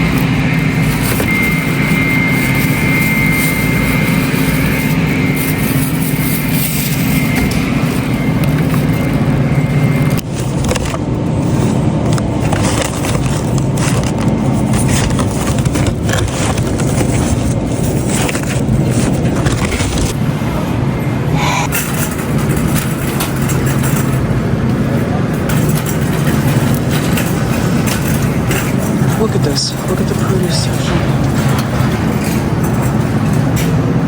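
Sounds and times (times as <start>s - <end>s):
small clicks and scrapes: 0.0s - 20.2s.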